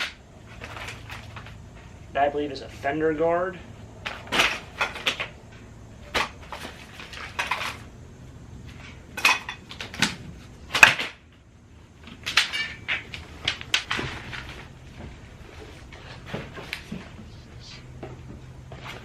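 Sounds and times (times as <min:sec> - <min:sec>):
objects knocking and clattering: 0:04.0 - 0:08.0, 0:08.6 - 0:11.4, 0:12.0 - 0:17.2.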